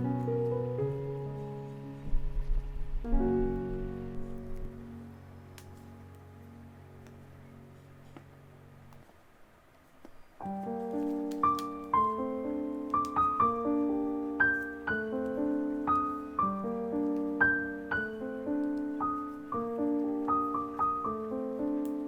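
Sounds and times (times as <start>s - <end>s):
slow solo piano melody: 0.0s - 9.0s, 10.4s - 22.0s.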